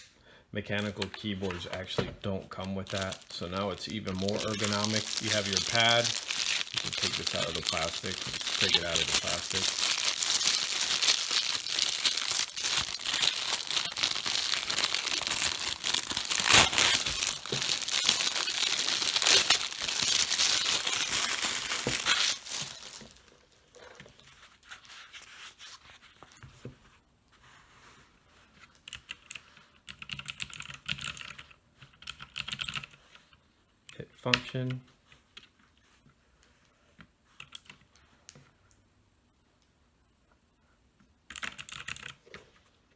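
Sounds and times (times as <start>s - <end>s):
faint clicks and handling: 0.0s - 23.3s
plastic bag crinkling and tearing: 0.8s - 23.3s.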